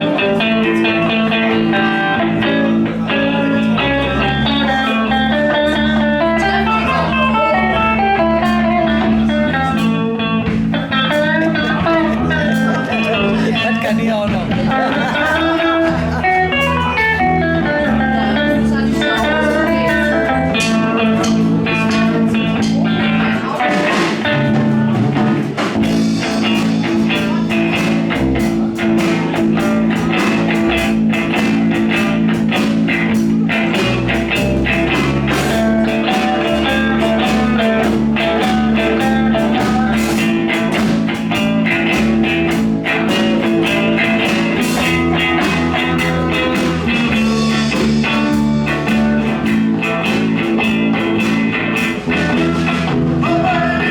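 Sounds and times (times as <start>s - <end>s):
blues-rock band playing: 0.0s - 53.9s
drum kit: 0.0s - 53.9s
electric guitar: 0.0s - 53.9s.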